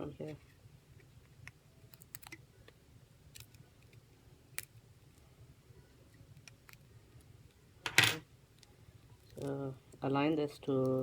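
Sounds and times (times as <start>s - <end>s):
low steady hum: 0.0s - 11.0s
faint clicks of small parts: 6.1s - 10.0s, 10.6s - 11.0s.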